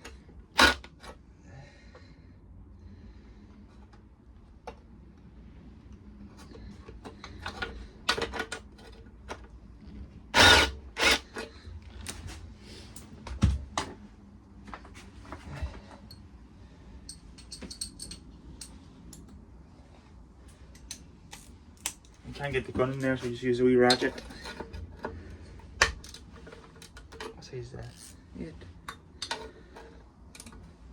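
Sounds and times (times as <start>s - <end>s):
metal tools clicking and clinking: 17.0s - 19.2s, 23.8s - 24.7s.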